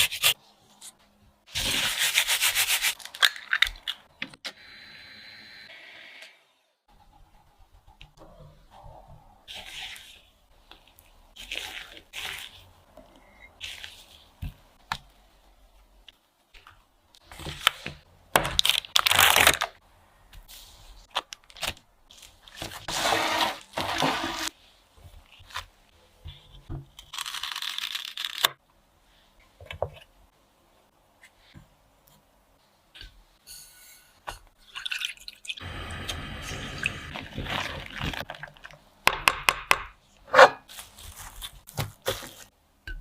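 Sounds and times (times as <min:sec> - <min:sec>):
rustling and tearing: 0:27.0 - 0:28.6, 0:40.6 - 0:42.5.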